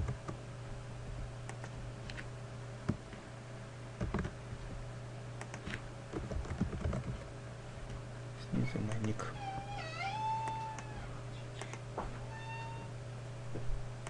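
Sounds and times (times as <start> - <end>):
steady low hum: 0.0 - 14.0
keyboard keystrokes and clicks: 4.0 - 4.4, 5.4 - 7.3, 8.8 - 9.2.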